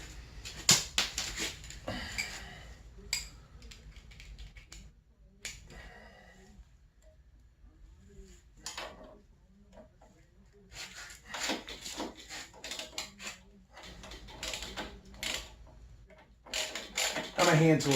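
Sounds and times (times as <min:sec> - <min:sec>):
hand tools clicking and clinking: 0:16.5 - 0:17.9.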